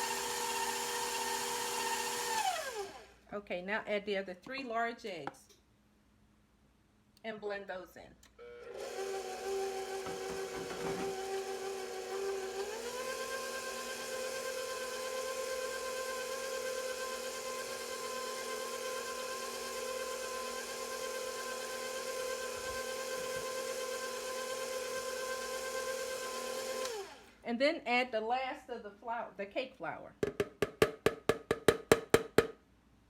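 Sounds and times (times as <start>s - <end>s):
stand mixer motor whining: 0.0s - 3.1s, 8.4s - 27.3s.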